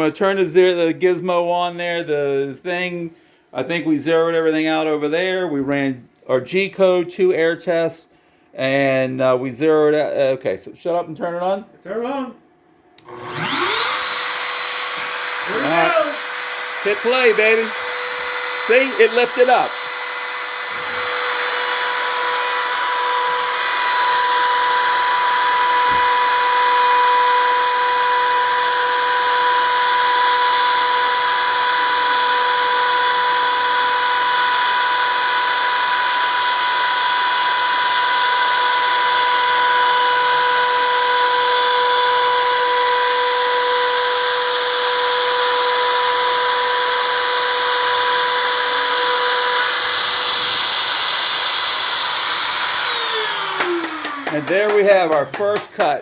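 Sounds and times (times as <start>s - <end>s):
router spindle high whine: 13.0s - 55.4s
router bit cutting wood: 13.0s - 56.0s.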